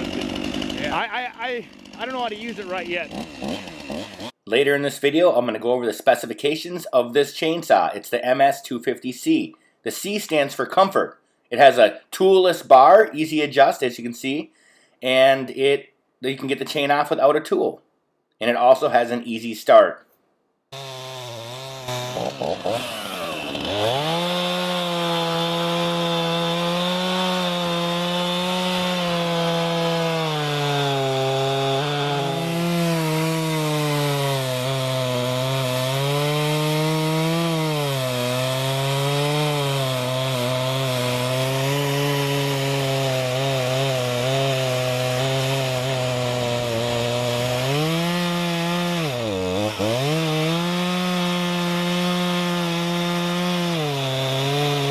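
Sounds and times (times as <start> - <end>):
chainsaw cutting wood: 0.0 - 4.4, 20.7 - 54.9.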